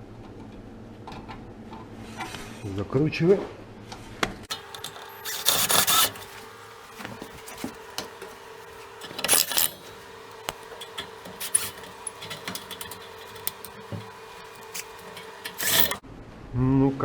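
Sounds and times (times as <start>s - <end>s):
screwdriver driving screws: 4.5s - 16.0s.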